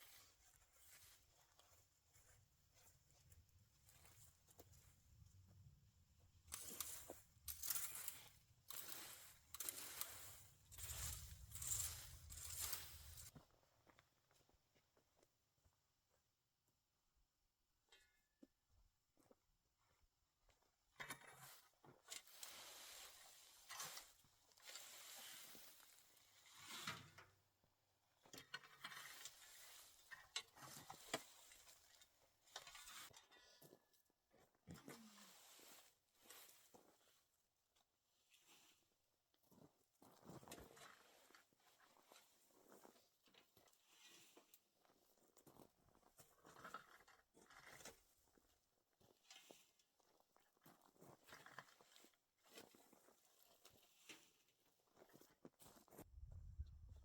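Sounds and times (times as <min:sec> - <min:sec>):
rake scraping debris: 0:06.5 - 0:13.3.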